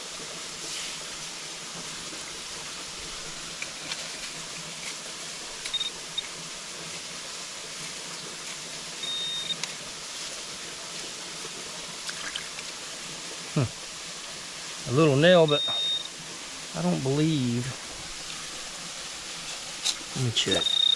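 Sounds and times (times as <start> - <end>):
creek rushing: 0.0 - 20.7
pinpointer beeping: 5.7 - 6.0, 9.0 - 9.6, 15.5 - 16.1, 20.5 - 20.9.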